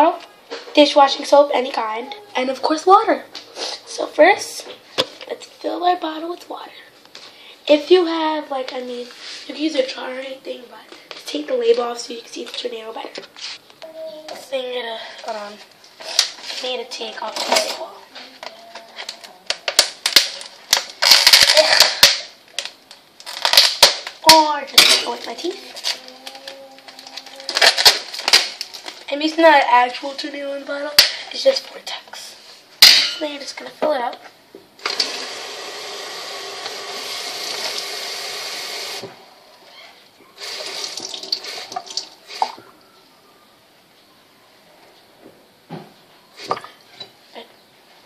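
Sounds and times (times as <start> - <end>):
plastic label tearing and crinkling: 18.4 - 24.4, 25.4 - 29.1
tap water filling a bottle: 40.5 - 42.6.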